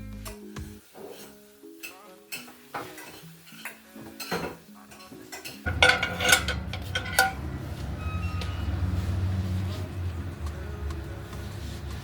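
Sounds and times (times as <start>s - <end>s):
soft background music: 0.0s - 12.0s
dishes and cutlery clinking: 1.0s - 7.8s.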